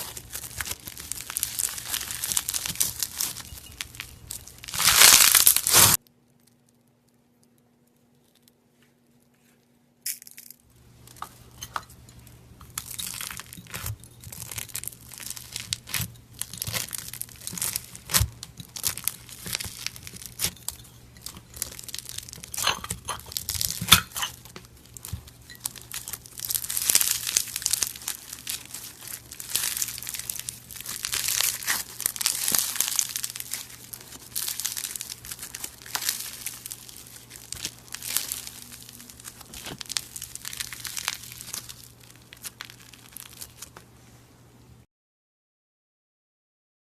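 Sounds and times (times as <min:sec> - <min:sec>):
crackling and tearing with snaps: 0:00.0 - 0:08.6, 0:12.6 - 0:43.9
brittle material crunching: 0:00.0 - 0:43.8.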